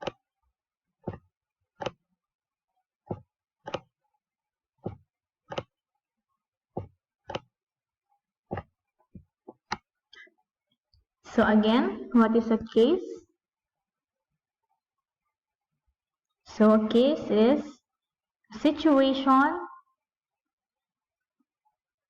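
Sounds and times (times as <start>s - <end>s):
sharp clicks or taps: 3.1s - 3.8s.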